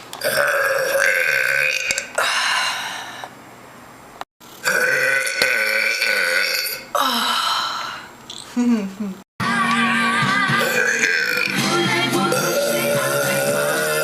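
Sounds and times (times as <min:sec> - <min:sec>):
woman belching loudly: 0:00.2 - 0:02.1, 0:04.6 - 0:07.1, 0:10.6 - 0:11.6, 0:12.2 - 0:14.0.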